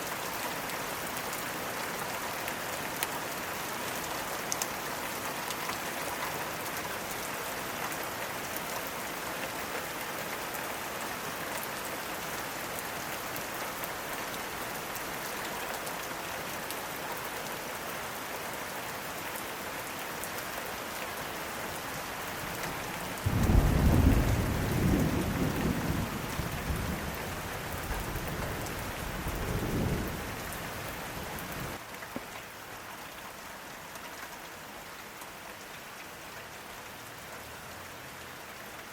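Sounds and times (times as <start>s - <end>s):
steady rain falling: 0.0s - 38.9s
thunder clap rumbling: 23.3s - 27.2s.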